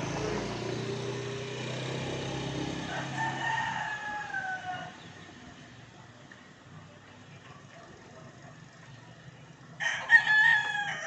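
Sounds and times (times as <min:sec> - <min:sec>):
rooster crowing: 0:02.7 - 0:05.0, 0:09.8 - 0:11.0.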